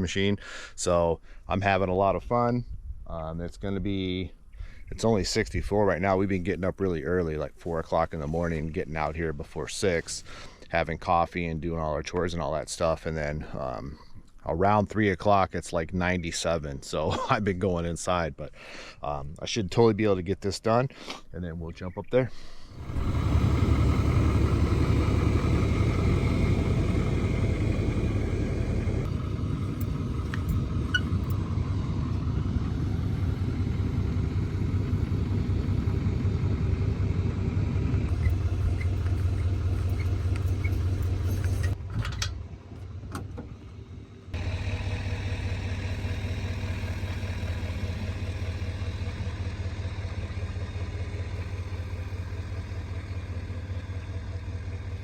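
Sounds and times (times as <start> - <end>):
excavator engine running: 22.7 - 55.0.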